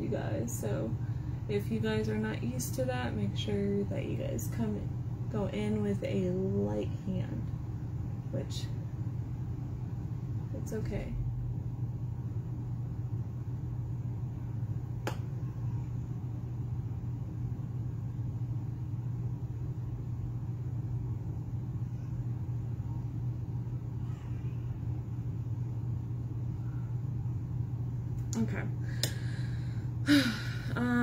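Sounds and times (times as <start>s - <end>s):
low hum: 0.0s - 31.0s.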